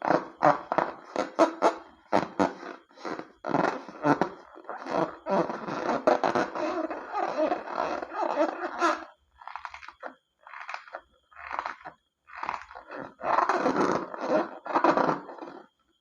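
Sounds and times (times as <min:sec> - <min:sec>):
slime squelching: 0:08.6 - 0:12.9.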